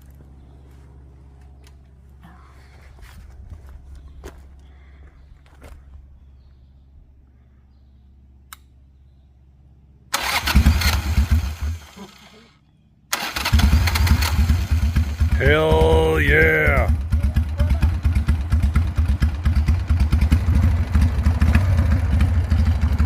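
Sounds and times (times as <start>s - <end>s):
motorcycle engine starting and running: 10.1s - 12.5s, 13.1s - 23.0s.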